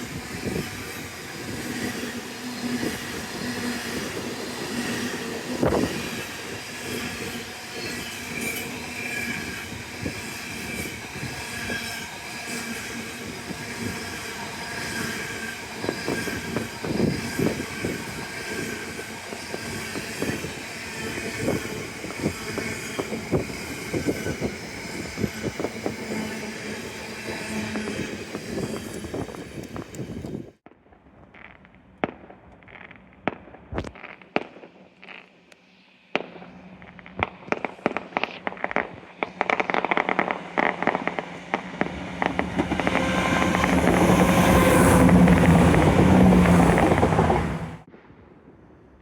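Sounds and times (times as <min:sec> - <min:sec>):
train wheel squeal: 0:00.0 - 0:30.5, 0:39.2 - 0:47.9.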